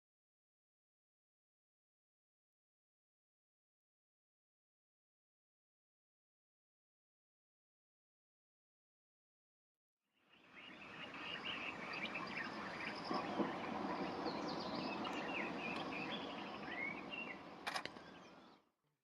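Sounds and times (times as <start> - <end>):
birds chirping: 10.3 - 18.6
outdoor background hiss: 10.3 - 18.6
sharp click: 17.6 - 18.1.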